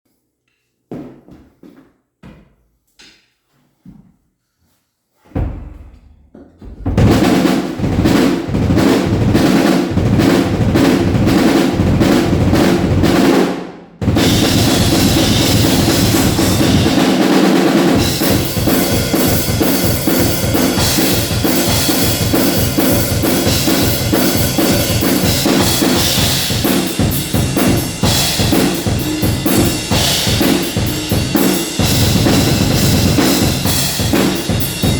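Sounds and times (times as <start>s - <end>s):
drum kit playing: 6.8s - 34.9s.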